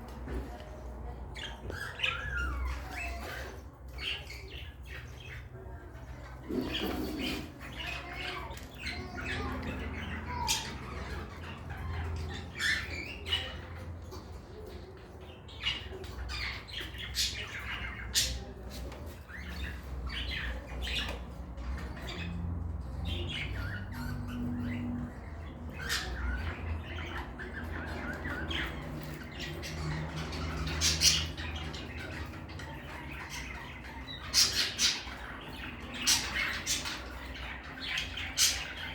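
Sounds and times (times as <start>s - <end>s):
bird squawks and chirps: 1.3s - 38.9s
budgerigars chattering: 1.4s - 38.9s.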